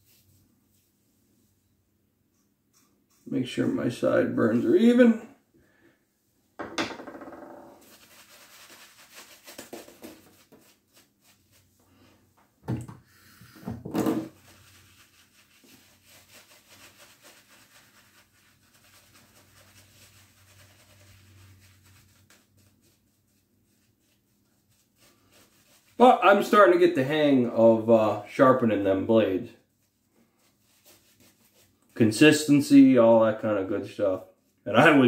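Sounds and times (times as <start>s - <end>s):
loud knocks: 6.6s - 7.4s.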